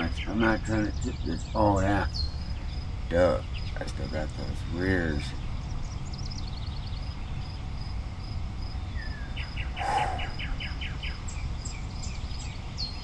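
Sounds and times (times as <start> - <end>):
bird trilling: 9.0 - 11.2
high bird notes: 9.6 - 10.7.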